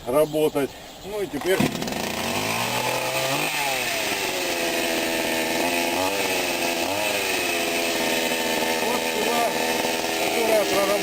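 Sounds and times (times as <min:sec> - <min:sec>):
chainsaw engine revving: 0:01.4 - 0:11.0.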